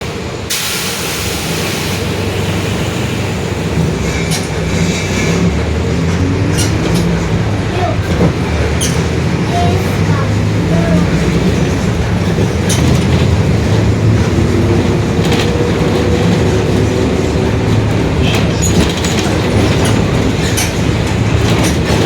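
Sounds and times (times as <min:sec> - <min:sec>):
bus diesel engine running: 0:00.0 - 0:22.0
hiss: 0:00.5 - 0:03.3.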